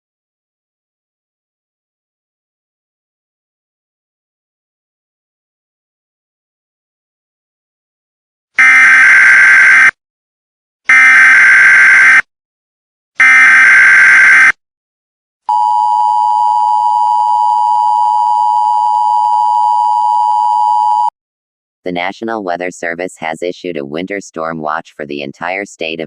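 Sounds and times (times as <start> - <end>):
screeching digital data tones: 8.6 - 9.9.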